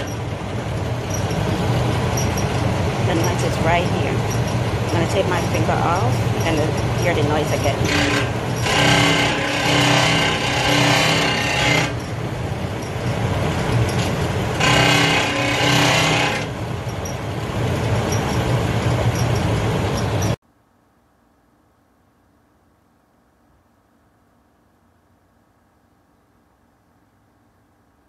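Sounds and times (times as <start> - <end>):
clothes dryer rough hum: 0.0 - 20.4.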